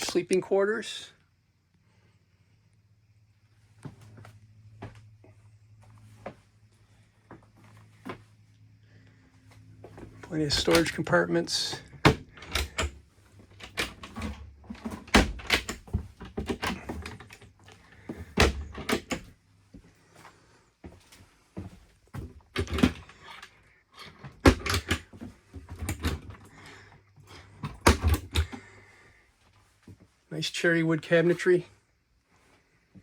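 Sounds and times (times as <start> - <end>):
cabinet doors opening and closing: 10.0 - 11.1, 11.7 - 19.3, 22.2 - 26.5, 27.6 - 28.6.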